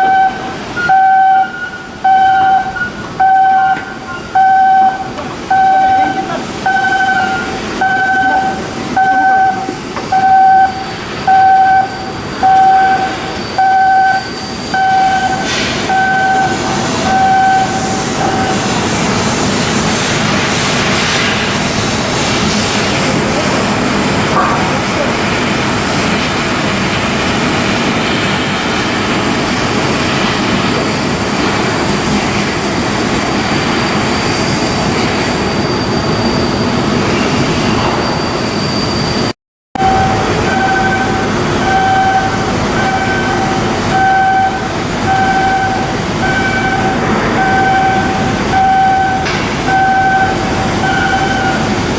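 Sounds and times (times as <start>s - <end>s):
two-tone warning beeper: 0.0s - 19.0s, 39.8s - 51.8s
heavy machinery rumbling: 0.0s - 38.3s, 39.8s - 51.9s.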